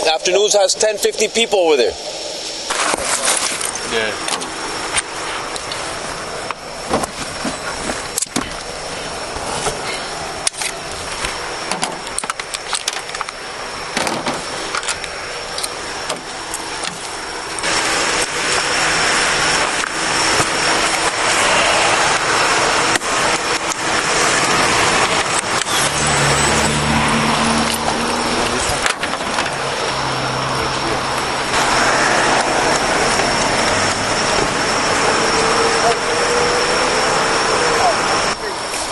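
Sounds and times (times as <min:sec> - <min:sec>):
roadside traffic rush: 0:00.0 - 0:38.9
scattered clicks and rattles: 0:10.4 - 0:13.4, 0:27.6 - 0:29.6.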